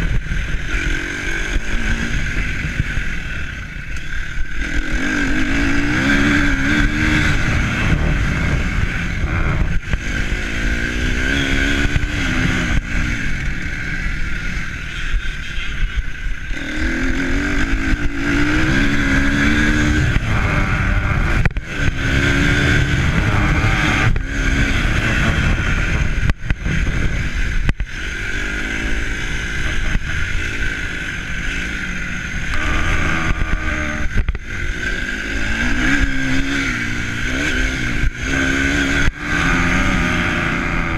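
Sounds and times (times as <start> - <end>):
wind rumble on microphone: 0.0 - 28.0
vehicle engine running: 0.0 - 40.9.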